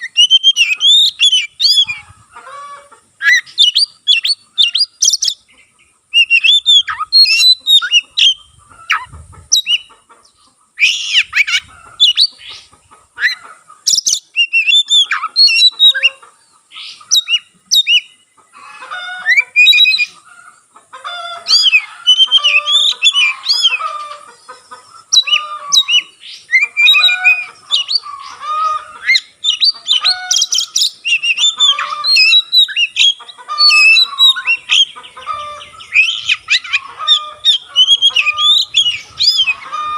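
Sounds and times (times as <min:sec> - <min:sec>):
bird singing whistled phrases: 0:00.0 - 0:02.0, 0:03.2 - 0:05.4, 0:06.1 - 0:08.4, 0:10.8 - 0:12.4, 0:13.9 - 0:16.2, 0:17.1 - 0:18.1, 0:19.2 - 0:20.1, 0:25.2 - 0:28.0, 0:29.0 - 0:35.0, 0:35.8 - 0:39.7.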